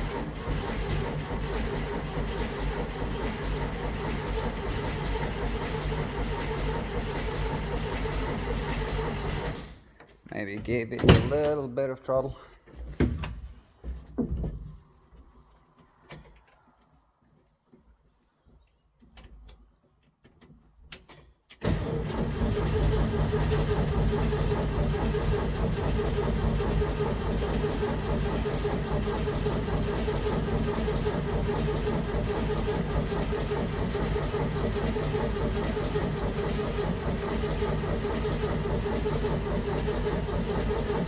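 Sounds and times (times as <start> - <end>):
car starter cranking engine: 0.0 - 9.9, 21.6 - 41.0.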